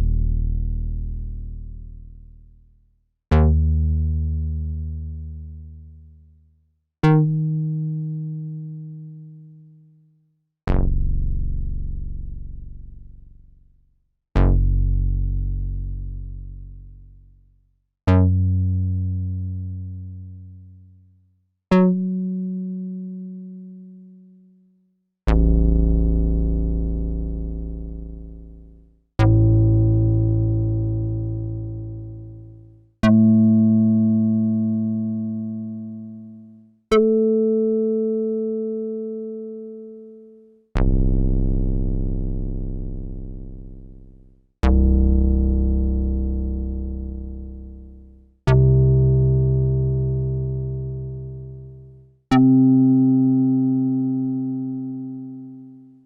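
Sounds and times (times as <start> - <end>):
synthesizer bass notes: 25.3 - 40.2, 40.8 - 55.3.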